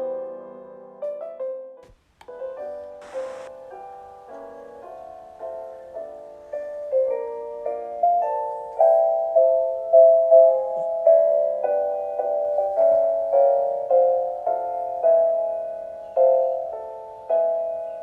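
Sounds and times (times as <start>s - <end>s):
gentle solo piano music: 0.0s - 18.0s
short hiss: 3.0s - 3.6s.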